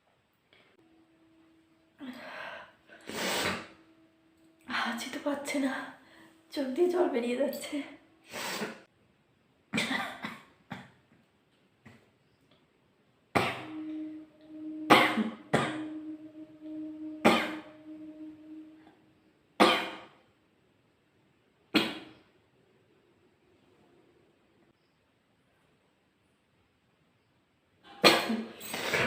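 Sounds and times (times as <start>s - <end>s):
low hum: 0.8s - 8.3s, 13.4s - 19.3s.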